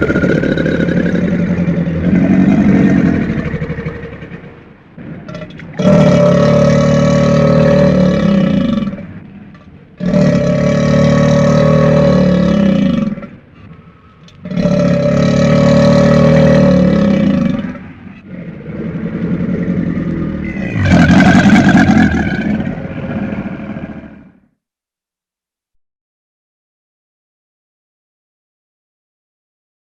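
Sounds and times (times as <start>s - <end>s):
crocodile growling: 0.0s - 9.2s, 10.0s - 13.4s, 14.4s - 24.4s.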